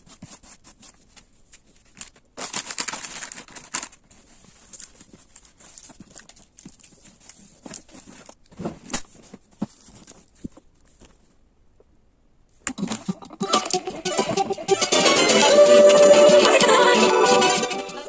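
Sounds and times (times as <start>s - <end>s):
light clicks and rustles: 3.0s - 11.4s
music: 12.8s - 18.0s.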